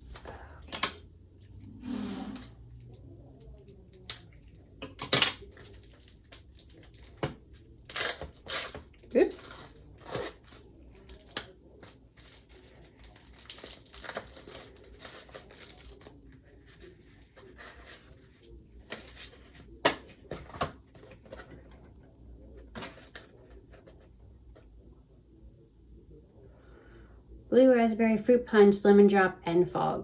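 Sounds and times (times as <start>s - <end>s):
packaging rustling and crinkling: 5.4s - 21.7s.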